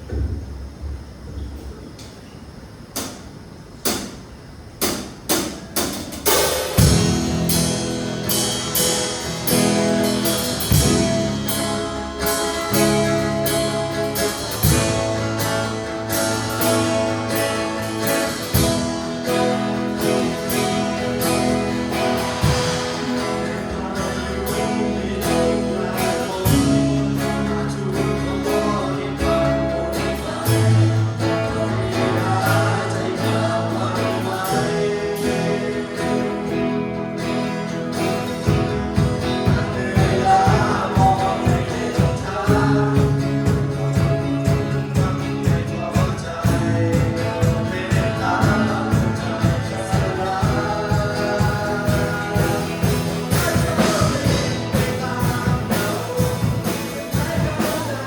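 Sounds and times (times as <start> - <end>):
drum hits: 3.9 - 24.6, 38.5 - 58.0
worship band music: 4.8 - 58.0.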